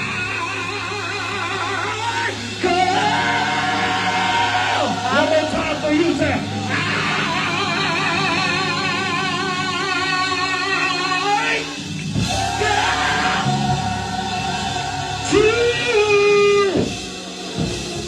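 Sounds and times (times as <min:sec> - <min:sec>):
band accompaniment: 0:00.0 - 0:18.0
gospel choir singing: 0:00.0 - 0:18.0.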